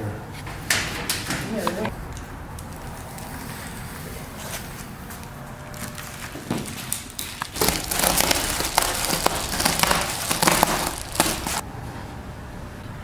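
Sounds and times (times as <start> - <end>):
sheet insulation crinkling: 2.7 - 11.6.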